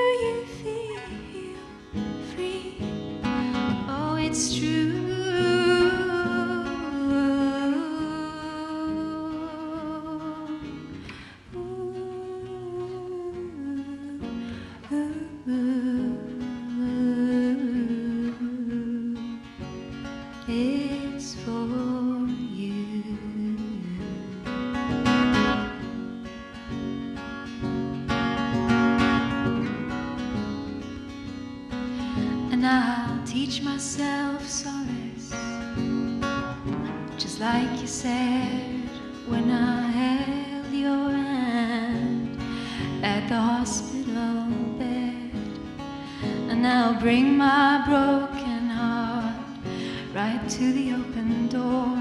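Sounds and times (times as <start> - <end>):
acoustic guitar: 0.0 - 52.0.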